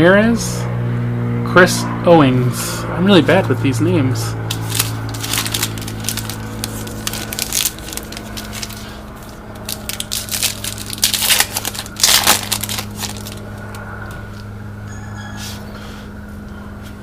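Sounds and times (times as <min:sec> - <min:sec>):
low electrical hum: 0:00.0 - 0:17.0
plastic wrapper crinkling: 0:04.5 - 0:13.8.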